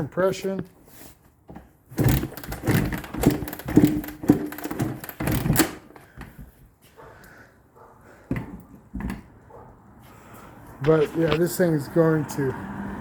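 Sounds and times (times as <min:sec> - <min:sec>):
kick-starter metallic clunks: 0:01.9 - 0:06.0.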